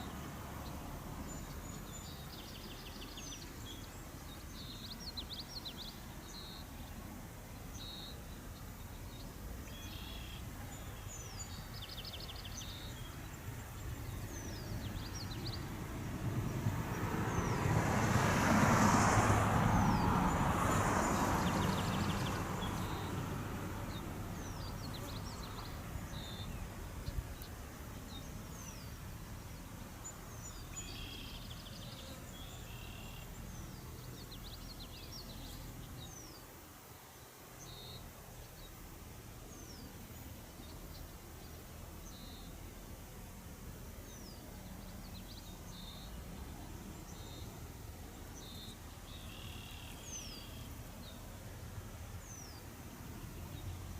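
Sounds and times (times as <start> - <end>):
birds chirping: 0.0 - 15.8, 19.7 - 36.6, 44.0 - 51.5
vehicle passing: 14.4 - 26.8.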